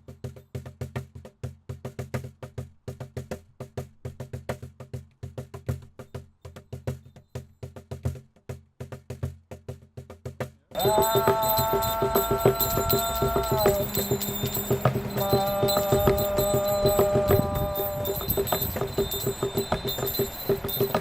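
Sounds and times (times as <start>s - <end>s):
drum beaten fast: 8.8s - 21.0s
sustained ringing tones: 10.8s - 21.0s.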